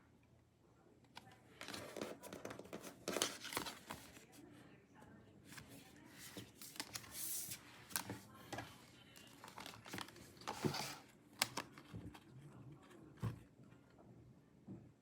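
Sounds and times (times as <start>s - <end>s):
paper or plastic rustling: 1.6s - 4.3s, 5.5s - 12.2s.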